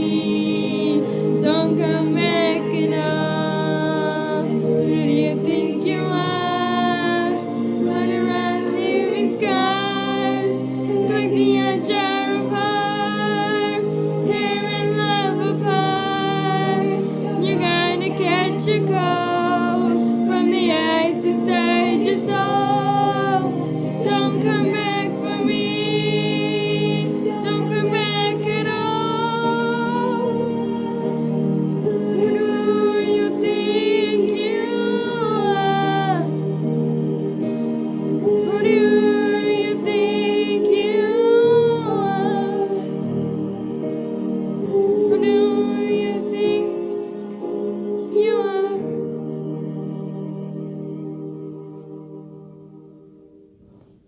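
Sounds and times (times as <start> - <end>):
woman singing a pop ballad: 0.0 - 30.5
low backing accompaniment: 0.0 - 54.0.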